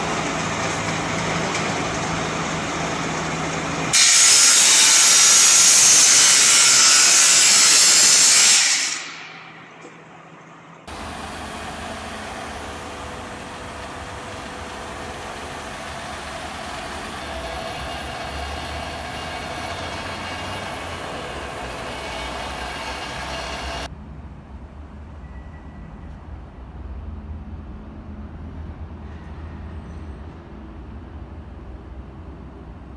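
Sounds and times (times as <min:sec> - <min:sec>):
angle grinder cutting iron: 0:00.0 - 0:09.6, 0:10.9 - 0:23.9
steady machine noise: 0:00.0 - 0:23.9.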